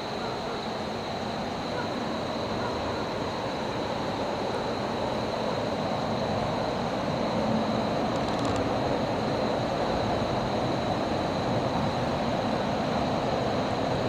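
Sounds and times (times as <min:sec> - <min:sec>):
train rumbling: 0:05.0 - 0:14.0.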